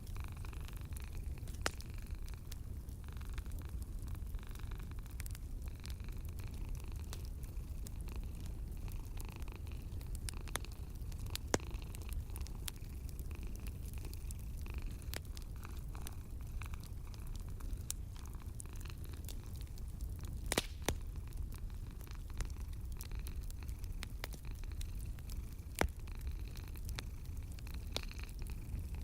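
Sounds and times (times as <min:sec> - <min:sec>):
cat purring: 0:00.0 - 0:29.0
wood fire crackling: 0:00.0 - 0:29.0
sharp pops of fire: 0:00.9 - 0:02.6, 0:09.1 - 0:28.3.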